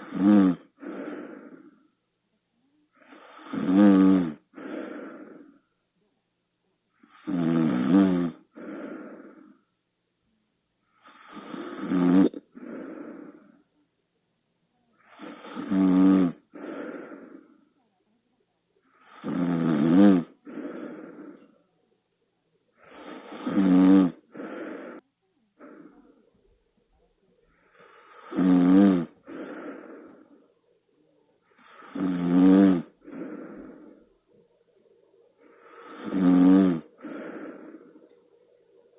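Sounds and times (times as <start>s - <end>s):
person snoring: 0.0s - 1.7s, 3.0s - 5.5s, 7.1s - 9.5s, 11.0s - 13.4s, 15.1s - 17.4s, 19.0s - 21.5s, 22.8s - 25.0s, 27.6s - 30.4s, 31.5s - 34.4s, 35.4s - 38.9s.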